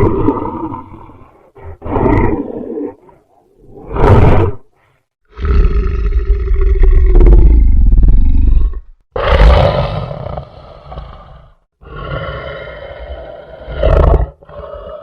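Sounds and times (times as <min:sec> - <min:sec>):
deep growling monster roars: 0:00.0 - 0:04.6, 0:05.3 - 0:15.0.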